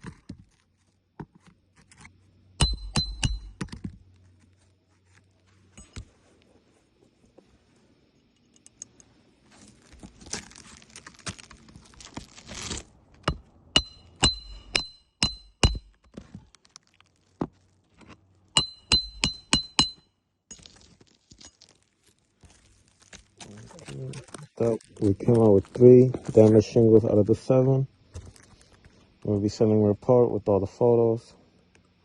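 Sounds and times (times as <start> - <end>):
hammer striking metal: 2.6 - 3.6, 13.2 - 16.0, 18.6 - 20.1.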